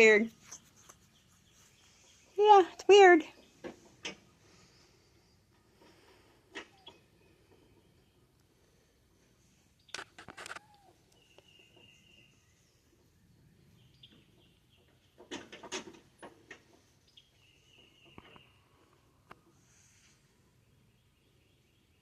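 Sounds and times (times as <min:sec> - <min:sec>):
clicks and rustles: 0:09.9 - 0:11.5.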